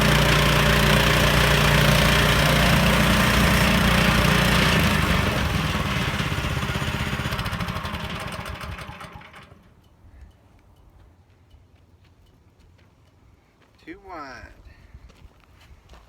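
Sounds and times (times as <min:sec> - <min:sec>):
sawmill engine running and winding down: 0:00.0 - 0:09.8.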